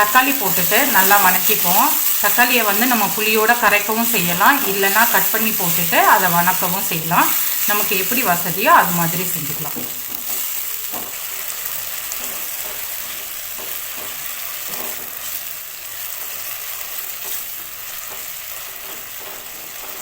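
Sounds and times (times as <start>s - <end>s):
tomatoes sizzling in hot oil: 0.0s - 20.0s
spoon scraping and tapping pan: 9.5s - 11.2s, 12.1s - 15.4s.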